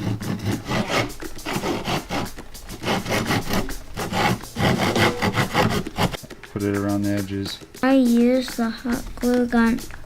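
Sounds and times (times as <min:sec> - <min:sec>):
scraping strokes on wood: 0:00.0 - 0:06.3.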